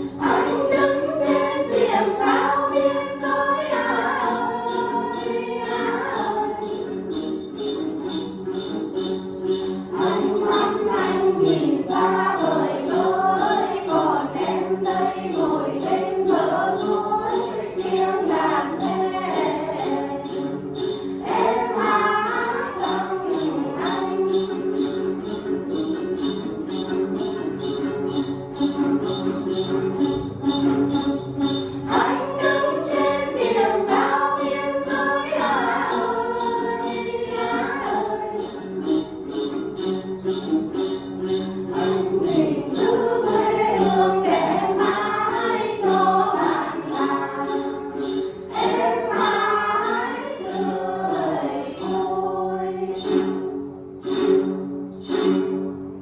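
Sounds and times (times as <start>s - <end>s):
group of voices singing: 0.0s - 7.2s, 9.9s - 25.0s, 31.9s - 39.0s, 41.7s - 53.4s
steady jingling beat: 0.0s - 55.5s
musical accompaniment: 0.0s - 56.0s.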